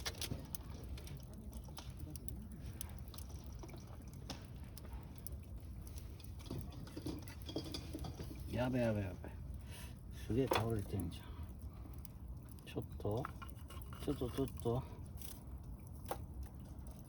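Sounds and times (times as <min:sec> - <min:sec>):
campfire crackling: 0:00.0 - 0:17.0
low steady rumble: 0:00.0 - 0:17.0.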